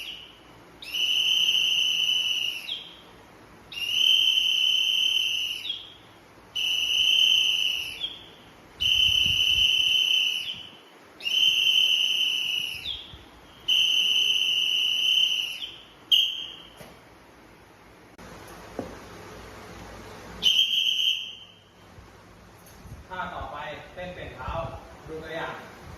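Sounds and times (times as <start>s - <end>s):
whistle blasts: 0.0s - 3.1s, 3.7s - 16.8s, 20.4s - 21.7s.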